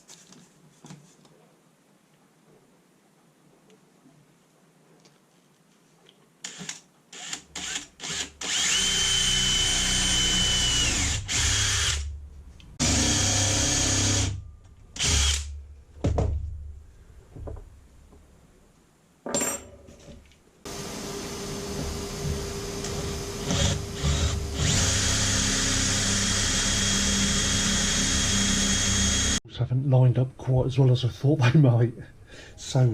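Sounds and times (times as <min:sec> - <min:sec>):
electric drill boring into wood: 0:06.5 - 0:12.1, 0:12.8 - 0:14.4, 0:15.0 - 0:15.5, 0:20.7 - 0:29.4.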